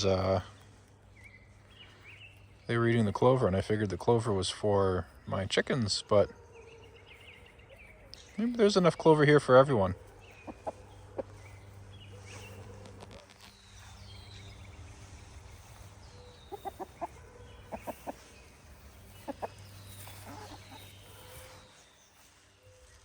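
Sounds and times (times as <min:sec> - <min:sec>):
chickens clucking softly: 0:09.8 - 0:13.3, 0:15.4 - 0:21.6
faint high bird chirps: 0:10.0 - 0:23.0.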